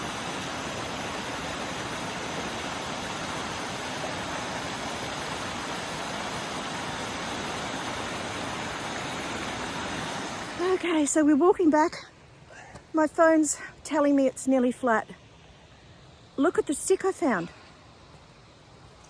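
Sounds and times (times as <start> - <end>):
waterfall rushing: 0.0 - 11.1.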